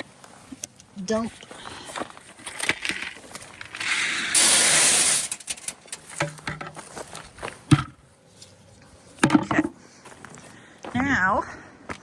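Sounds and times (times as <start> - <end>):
corn kernels pouring: 3.8 - 5.9.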